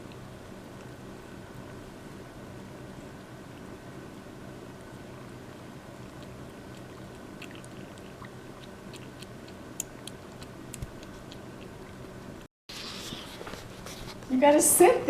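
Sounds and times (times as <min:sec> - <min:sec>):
kitten lapping milk: 0:04.9 - 0:12.5.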